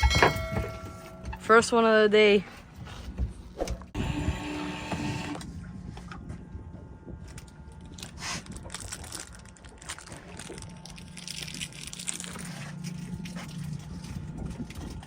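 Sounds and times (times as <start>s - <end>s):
steady low hum: 0.0s - 15.0s
crackling rustling handling noise: 7.2s - 15.0s.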